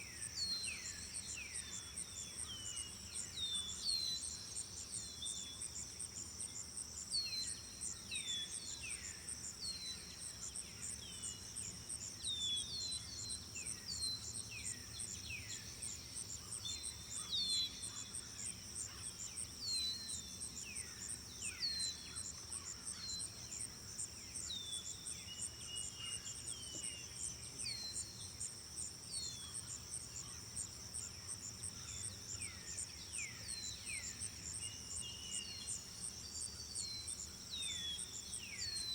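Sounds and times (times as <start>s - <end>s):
crickets chirring: 11.8s - 38.9s.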